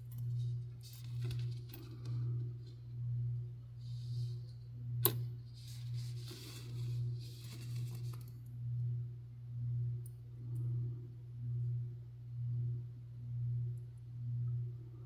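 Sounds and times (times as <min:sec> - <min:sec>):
soft rustling and scraping: 0:00.0 - 0:03.0, 0:03.8 - 0:04.7, 0:05.4 - 0:08.4
steady low hum: 0:00.0 - 0:15.0.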